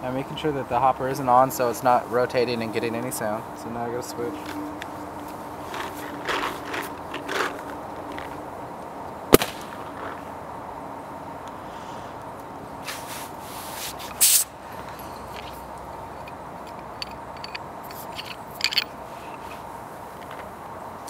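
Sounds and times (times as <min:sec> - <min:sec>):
short hissing bursts: 0:12.8 - 0:14.6.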